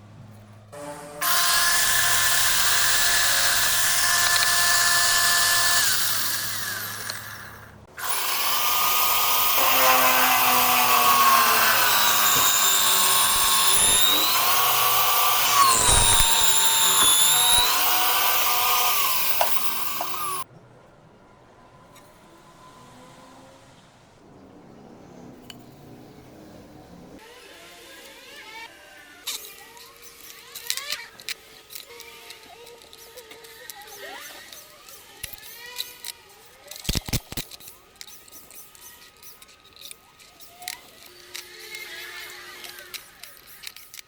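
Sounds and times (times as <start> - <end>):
electric power tool whining: 0.7 - 20.5.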